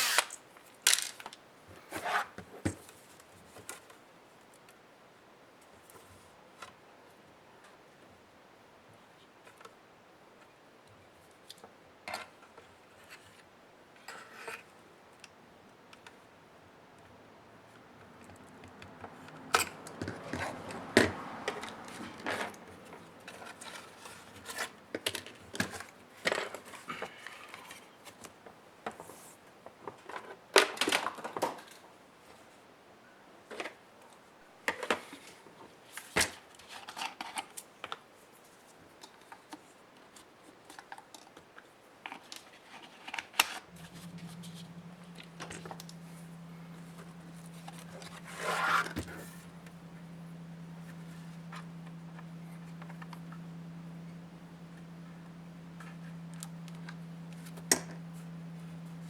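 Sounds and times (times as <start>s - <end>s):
steady low hum: 43.7s - 59.0s.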